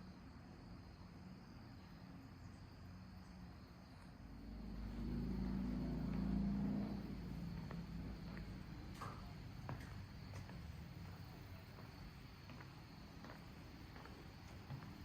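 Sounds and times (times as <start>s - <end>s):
passing vehicle rumble: 4.1s - 11.6s.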